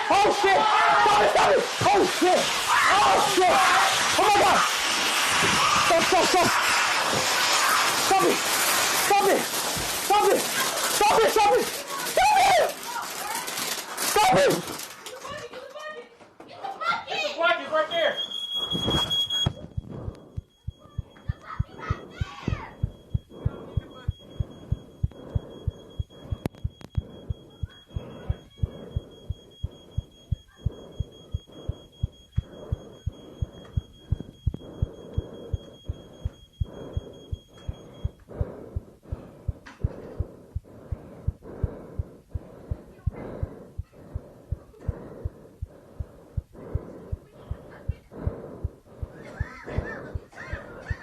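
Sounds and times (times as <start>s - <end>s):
smoke alarm steady tone: 0.4s - 14.5s, 17.7s - 51.0s
heartbeat thumps: 18.6s - 51.0s.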